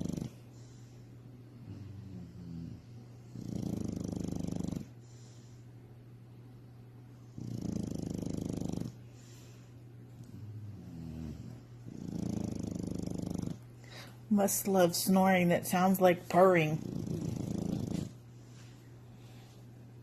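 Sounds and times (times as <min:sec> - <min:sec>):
pet snoring with rattle: 0:00.0 - 0:00.7, 0:01.6 - 0:05.2, 0:07.2 - 0:09.4, 0:10.2 - 0:13.7, 0:16.3 - 0:18.2
soft breaths: 0:00.0 - 0:03.3, 0:04.8 - 0:06.0, 0:08.9 - 0:14.8, 0:16.0 - 0:20.0.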